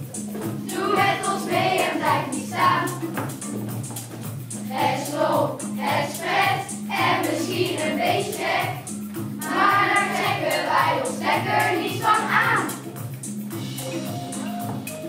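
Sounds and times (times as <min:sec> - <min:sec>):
instrumental accompaniment: 0:00.0 - 0:15.0
children's choir singing: 0:00.4 - 0:03.2, 0:04.6 - 0:12.9.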